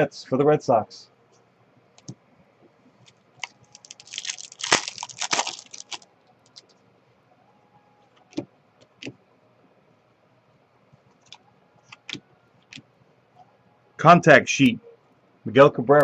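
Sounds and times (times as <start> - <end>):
trading cards crackling and clicking: 3.0 - 6.8.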